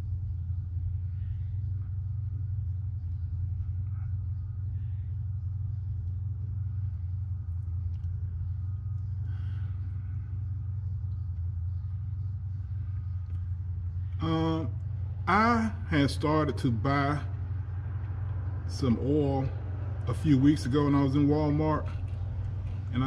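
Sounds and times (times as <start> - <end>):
low rumble: 0.0 - 23.0.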